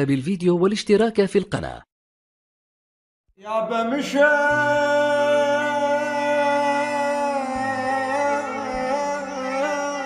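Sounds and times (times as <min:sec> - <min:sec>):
man singing a long held note: 0:03.4 - 0:10.0.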